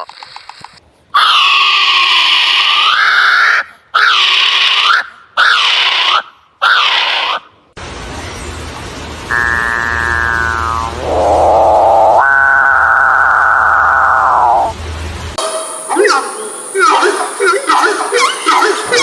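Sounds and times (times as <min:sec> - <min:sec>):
animal screaming: 0:01.2 - 0:07.5, 0:09.3 - 0:14.8.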